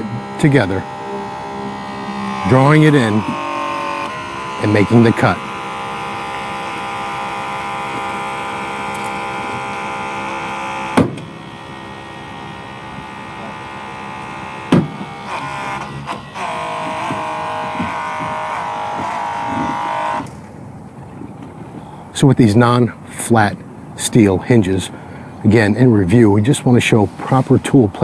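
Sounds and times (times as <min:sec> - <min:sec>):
hydraulic pump whining: 0:00.0 - 0:28.0.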